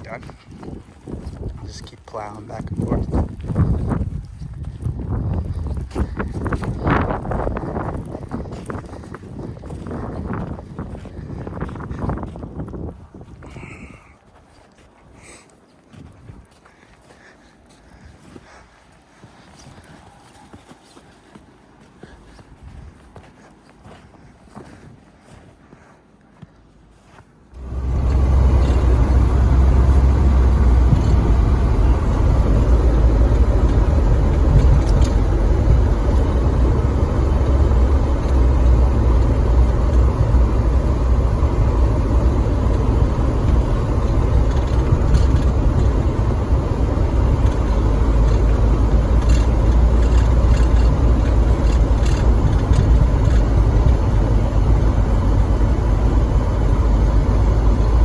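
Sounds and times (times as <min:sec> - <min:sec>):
vehicle engine rumbling: 0:00.0 - 0:21.4, 0:26.8 - 0:58.0.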